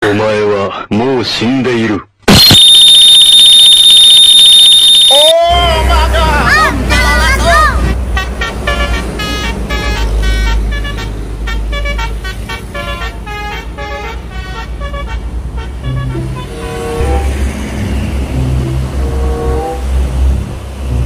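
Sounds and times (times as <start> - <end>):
bus horn tooting notes: 6.0 - 21.0
steady low rumble: 17.3 - 21.0.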